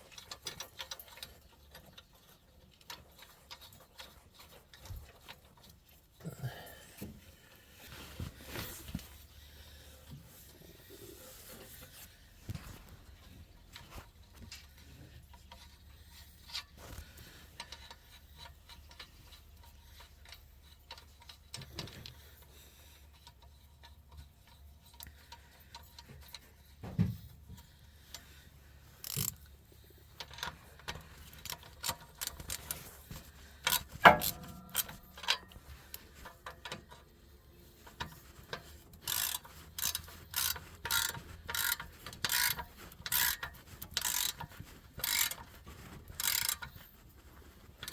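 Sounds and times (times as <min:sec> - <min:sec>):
ratchet wrench clicking: 0:29.0 - 0:29.4, 0:33.6 - 0:35.5, 0:39.0 - 0:45.5, 0:46.2 - 0:46.7.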